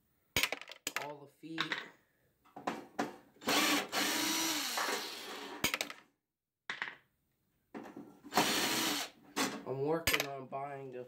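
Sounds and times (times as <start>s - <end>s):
cordless drill running: 3.4s - 5.6s, 8.3s - 9.2s.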